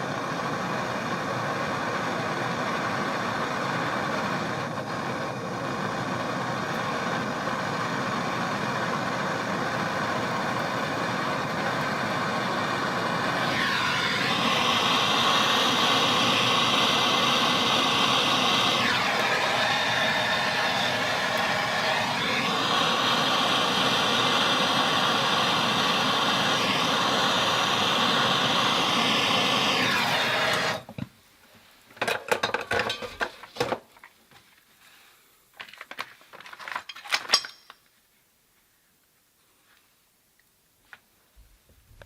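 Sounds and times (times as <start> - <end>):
gas torch hissing: 0.0 - 30.9
metal clinks and knocks: 36.7 - 37.9.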